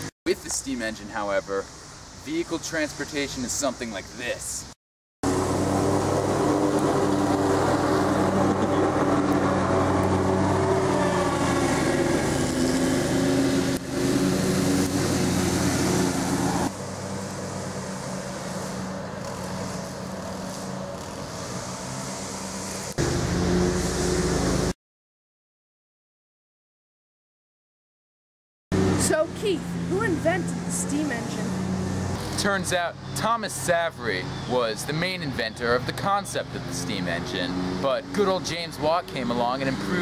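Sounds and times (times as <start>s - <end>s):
vehicle engine droning: 5.2s - 24.7s, 28.7s - 40.0s.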